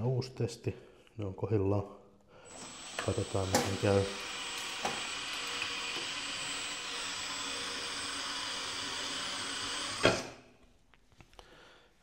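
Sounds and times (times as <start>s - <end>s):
electric drill running: 2.5s - 10.3s
wire stripping machine cutting cable: 2.6s - 10.4s.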